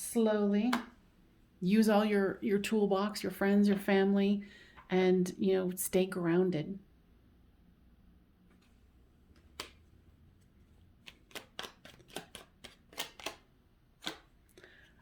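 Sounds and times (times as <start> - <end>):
playing cards clicking and snapping: 9.3 - 10.0, 10.9 - 14.4.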